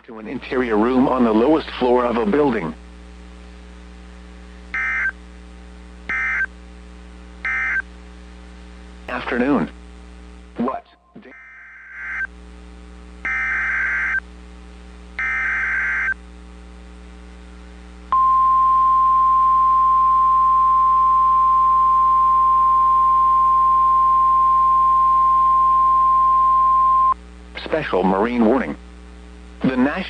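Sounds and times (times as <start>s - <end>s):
low steady radio hum: 0.0s - 11.4s, 12.0s - 30.0s
data bursts: 4.8s - 5.2s, 6.1s - 6.5s, 7.5s - 7.8s, 13.3s - 14.2s, 15.2s - 16.2s
steady warning alarm tone: 4.8s - 5.2s, 6.1s - 6.5s, 7.5s - 7.8s, 11.3s - 12.3s, 13.3s - 14.2s, 15.2s - 16.2s.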